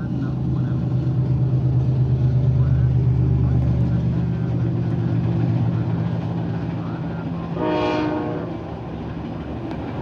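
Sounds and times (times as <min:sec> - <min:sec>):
traffic engine rumble: 0:00.0 - 0:07.6, 0:08.6 - 0:10.0
horn blast: 0:07.6 - 0:08.5.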